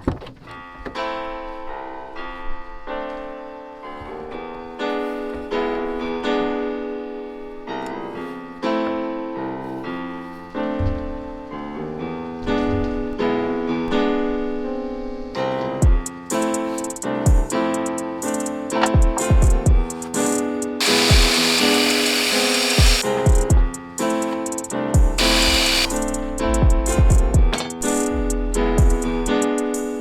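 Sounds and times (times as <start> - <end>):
slow piano melody: 0.6 - 30.0.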